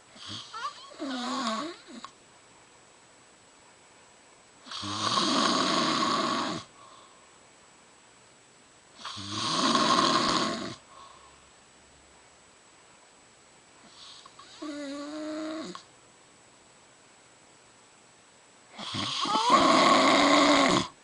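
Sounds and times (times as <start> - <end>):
woman snoring: 0.2 - 2.1, 4.6 - 6.7, 9.0 - 10.8, 13.9 - 15.9, 18.7 - 21.0.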